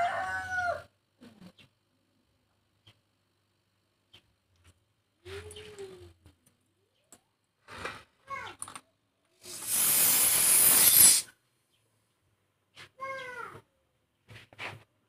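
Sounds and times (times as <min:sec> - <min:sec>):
compressed air hissing: 0:09.4 - 0:11.3.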